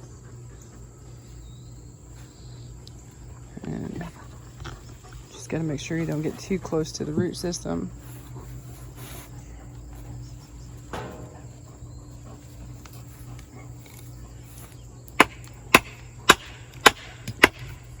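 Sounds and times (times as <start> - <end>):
wooden stake being hammered: 15.2 - 17.7.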